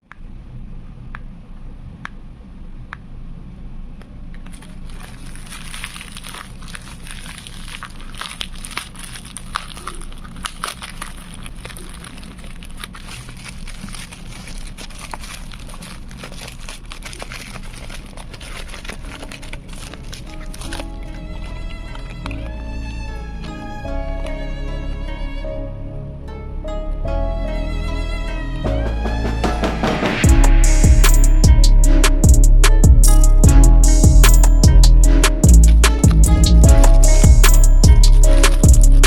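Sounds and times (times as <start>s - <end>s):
steady hum: 28.7s - 39.0s.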